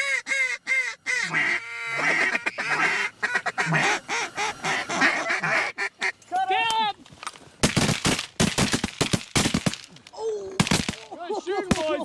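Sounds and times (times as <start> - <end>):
duck calls quacking: 0.0 - 6.2.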